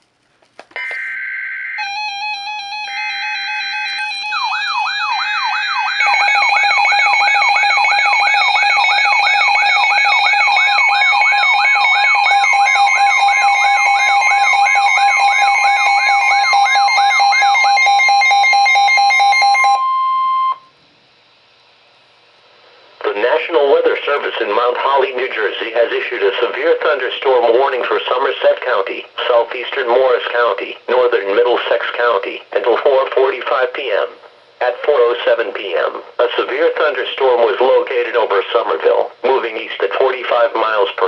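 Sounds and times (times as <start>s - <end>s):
electronic alarm tones: 0.8s - 20.7s.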